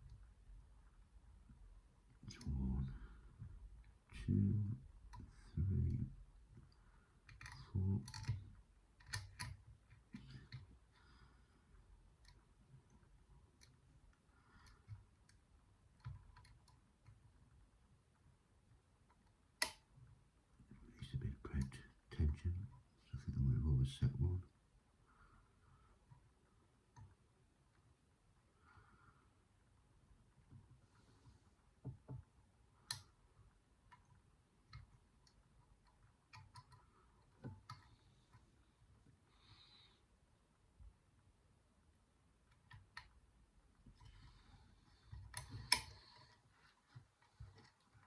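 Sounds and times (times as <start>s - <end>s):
lock pick metal clicks: 7.3s - 8.4s, 9.0s - 9.6s, 19.6s - 19.8s, 45.3s - 46.0s.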